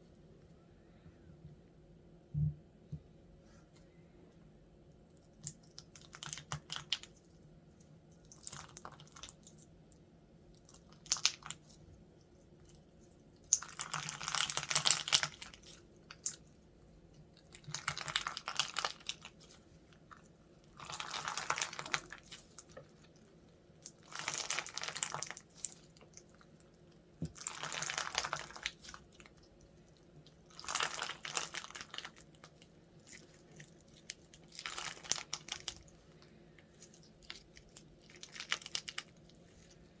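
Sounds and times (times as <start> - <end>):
slime squeezed crackling and popping: 13.4 - 16.5, 23.8 - 36.0, 36.6 - 39.4.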